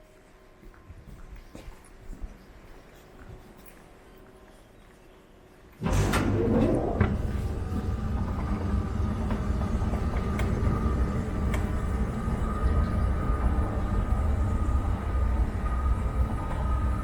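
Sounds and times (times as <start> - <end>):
escalator rumbling: 5.8 - 17.0.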